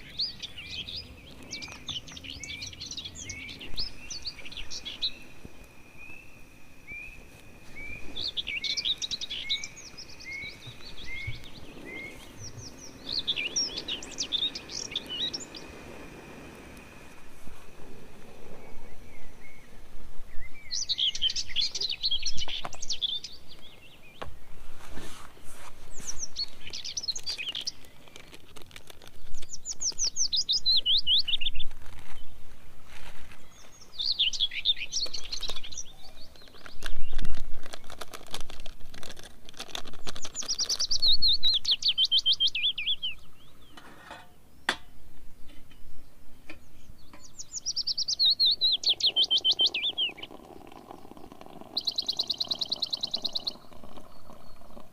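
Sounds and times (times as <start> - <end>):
songbird singing trilled phrase: 7.8 - 15.7, 19.1 - 24.2, 33.4 - 37.2, 40.2 - 43.8, 46.6 - 54.8.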